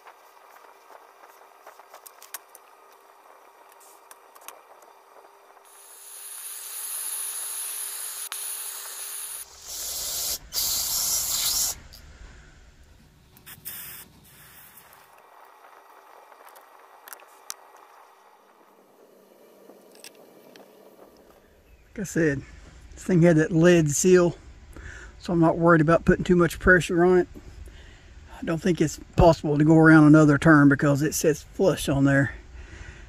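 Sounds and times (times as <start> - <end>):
hissing spray: 5.6 - 12.0, 13.4 - 15.2.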